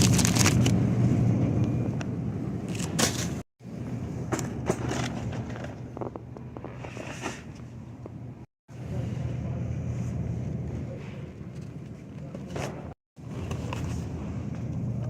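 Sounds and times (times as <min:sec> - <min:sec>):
shopping cart wheels rolling: 0:04.4 - 0:07.5.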